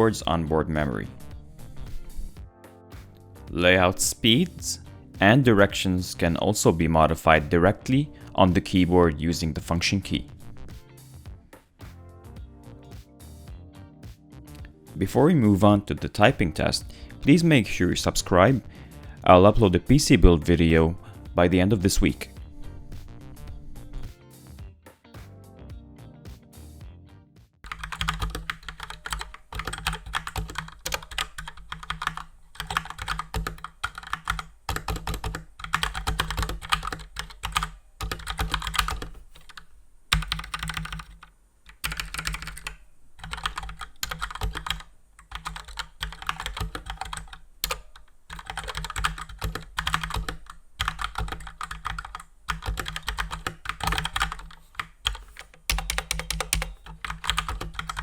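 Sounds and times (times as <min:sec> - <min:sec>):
mechanical keyboard typing: 0:27.6 - 0:58.0.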